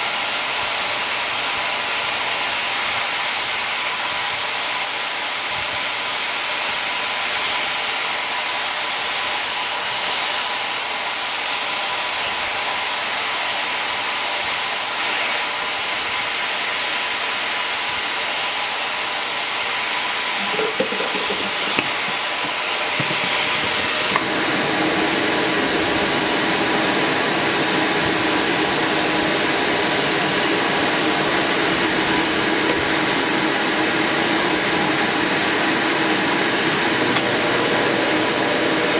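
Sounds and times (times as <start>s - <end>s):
vacuum cleaner motor whining: 0.0s - 38.9s.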